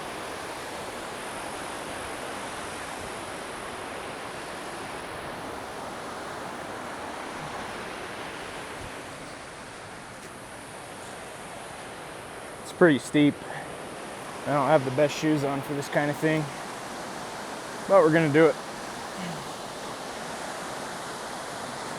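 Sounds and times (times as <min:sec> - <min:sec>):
waterfall rushing: 0:00.0 - 0:21.9.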